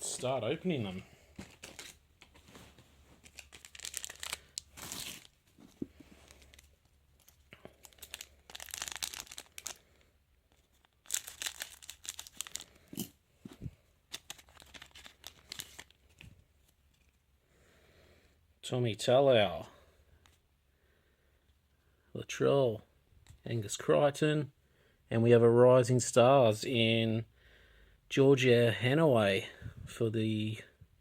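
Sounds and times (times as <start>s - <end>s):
wrappers crinkling: 1.4s - 13.1s, 14.1s - 16.3s
card packets tearing open: 3.2s - 13.1s, 14.1s - 16.2s.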